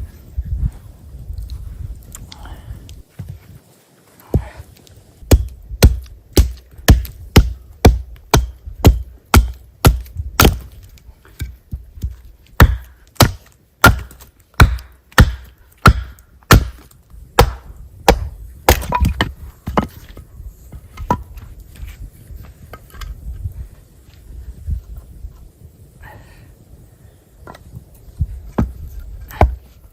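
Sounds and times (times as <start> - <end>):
blade chopping into wooden log: 5.3 - 10.7, 11.4 - 19.9.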